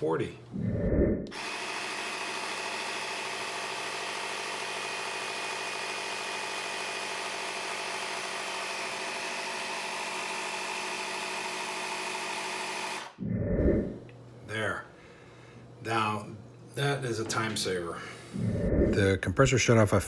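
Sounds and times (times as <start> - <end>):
air compressor running: 1.3 - 13.6.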